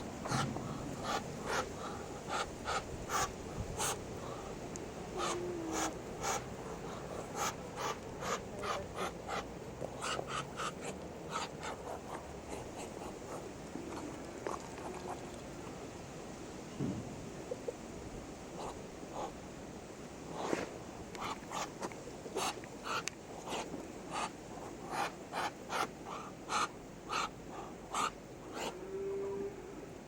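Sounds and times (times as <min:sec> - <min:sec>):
duck hissing huffs: 0:00.2 - 0:14.0.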